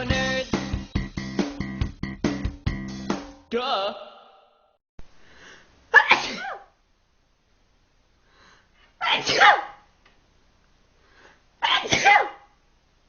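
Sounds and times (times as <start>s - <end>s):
person sneezing: 5.9s - 6.8s, 9.0s - 9.8s, 11.6s - 12.5s.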